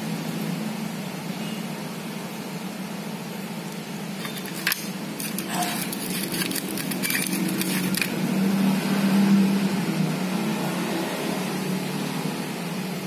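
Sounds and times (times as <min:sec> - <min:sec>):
clicks and crinkles of handling: 0:04.2 - 0:08.2.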